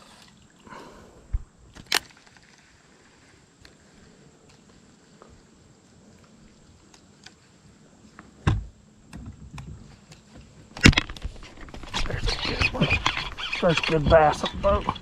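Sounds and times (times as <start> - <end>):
hollow thump: 8.4 - 9.3.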